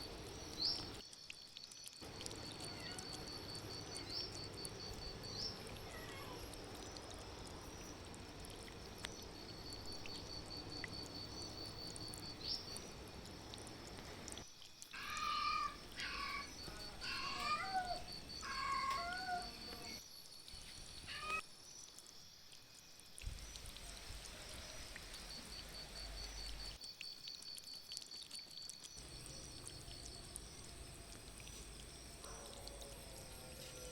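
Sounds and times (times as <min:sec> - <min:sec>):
insect chirping: 0:00.0 - 0:33.9
steady rain: 0:02.0 - 0:14.5, 0:23.2 - 0:26.8
cat meowing: 0:02.5 - 0:03.4, 0:05.7 - 0:06.5, 0:15.0 - 0:20.0, 0:21.1 - 0:21.4.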